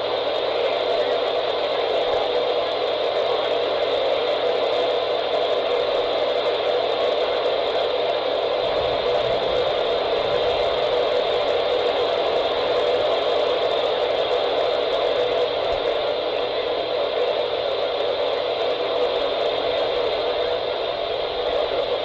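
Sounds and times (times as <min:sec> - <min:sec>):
radio static hiss: 0:00.0 - 0:22.0.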